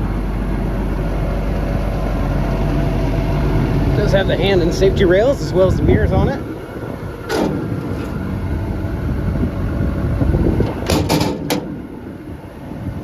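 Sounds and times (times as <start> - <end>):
diesel engine idling: 0.0 - 13.0
sharp clicks and knocks: 7.3 - 8.2, 10.6 - 11.8.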